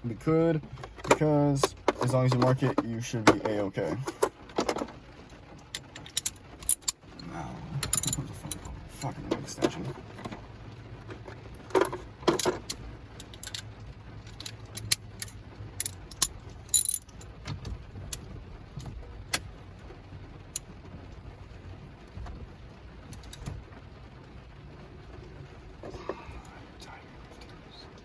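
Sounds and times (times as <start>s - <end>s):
metal hand tools clinking: 7.8s - 9.8s, 14.3s - 17.2s.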